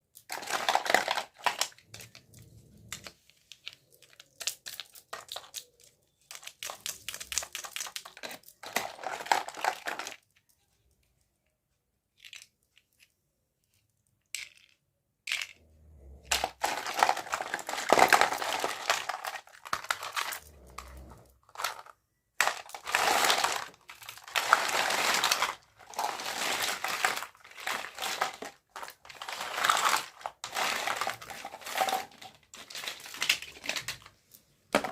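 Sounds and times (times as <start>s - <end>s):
plastic packaging crinkling and tearing: 0.2s - 2.2s, 3.6s - 10.2s, 16.3s - 34.2s.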